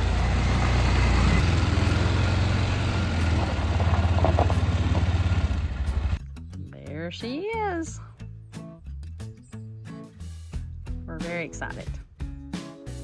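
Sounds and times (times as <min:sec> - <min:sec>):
large engine idling: 0:00.0 - 0:06.2.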